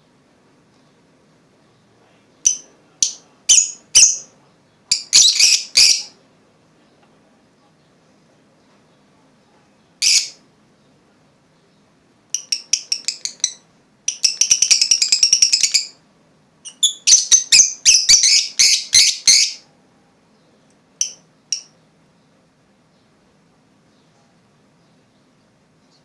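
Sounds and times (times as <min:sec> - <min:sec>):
lovebirds chirping: 0:01.7 - 0:06.2, 0:09.8 - 0:16.0, 0:16.6 - 0:19.6, 0:20.3 - 0:23.2.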